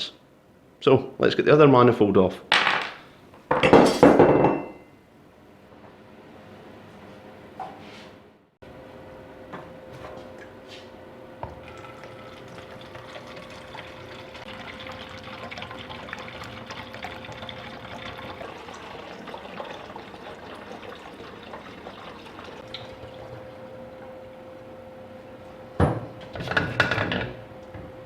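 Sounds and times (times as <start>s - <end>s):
small crackles and drips: 11.6s - 24.2s.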